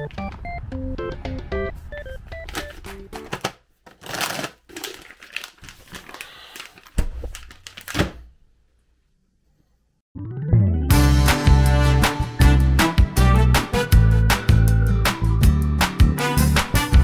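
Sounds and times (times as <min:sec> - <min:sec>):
rustling and crinkling: 0:02.2 - 0:08.3
music: 0:10.4 - 0:17.0.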